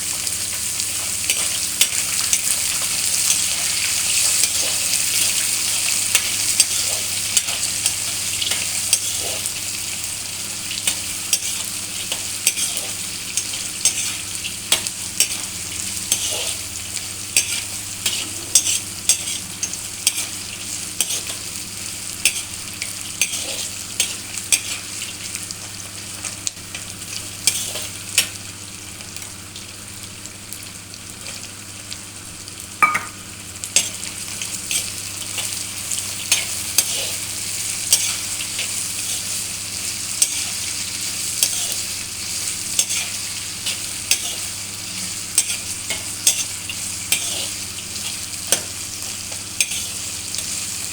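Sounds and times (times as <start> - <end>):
food sizzling in hot oil: 0.0 - 50.9
spatula scraping a pan: 10.9 - 14.2, 16.1 - 16.6, 17.4 - 20.4, 21.0 - 21.4, 22.2 - 22.6, 23.2 - 24.8, 33.8 - 35.6, 36.2 - 39.5, 40.2 - 48.2, 49.6 - 50.1.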